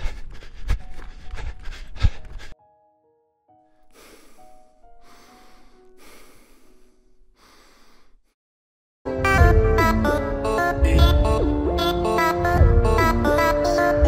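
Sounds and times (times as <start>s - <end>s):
person breathing heavily: 0.0s - 2.6s, 3.8s - 8.4s.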